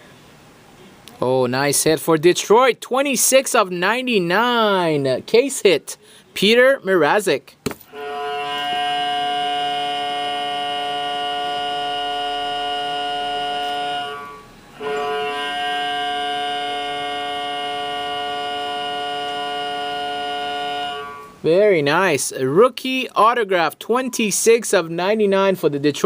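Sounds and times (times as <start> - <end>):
sustained music chord: 7.9 - 21.4.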